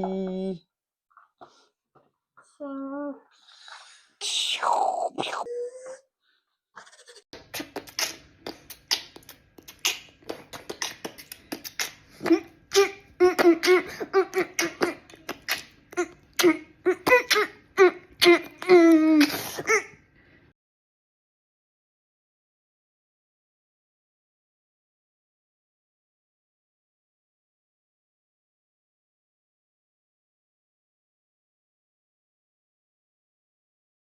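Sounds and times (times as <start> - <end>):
person laughing: 6.8 - 7.2.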